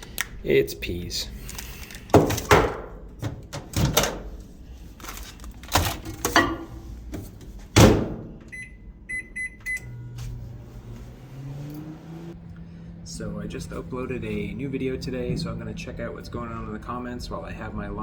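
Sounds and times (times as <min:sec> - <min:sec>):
microwave door knocks and thunks: 0:02.2 - 0:04.2, 0:07.7 - 0:08.4.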